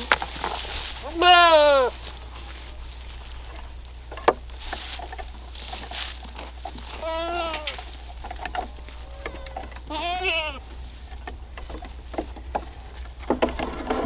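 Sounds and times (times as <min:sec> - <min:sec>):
light rustling: 0:00.0 - 0:14.0
baby goat bleating: 0:01.0 - 0:03.0, 0:06.8 - 0:08.0, 0:08.6 - 0:10.7.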